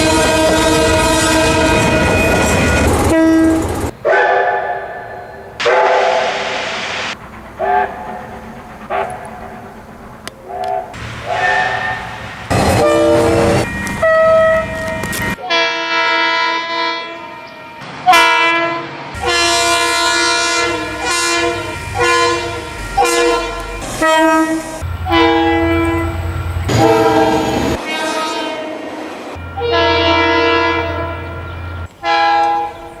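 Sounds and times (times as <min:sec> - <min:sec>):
train air horn blasts: 0:00.0 - 0:04.2, 0:11.0 - 0:31.4, 0:32.0 - 0:33.0
low rail rumble: 0:00.0 - 0:15.4, 0:17.6 - 0:33.0.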